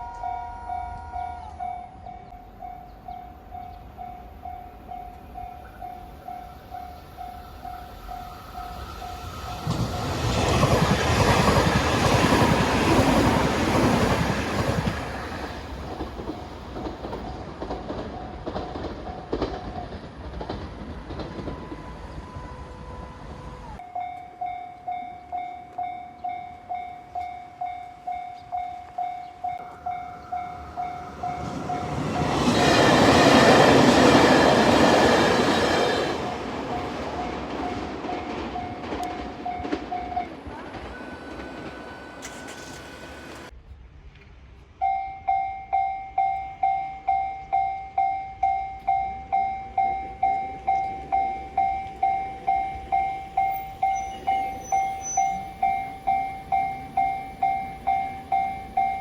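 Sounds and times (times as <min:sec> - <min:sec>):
train wheels clattering: 0:08.6 - 0:22.0, 0:30.6 - 0:43.5
level crossing bell clanging: 0:44.8 - 0:59.0.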